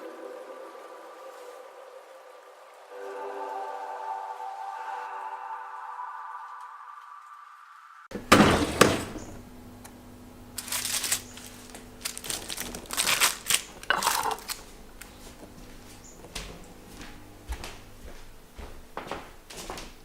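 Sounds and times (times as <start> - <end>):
crinkling and clattering in kitchen: 8.1 - 9.4, 10.5 - 16.8, 18.6 - 20.0.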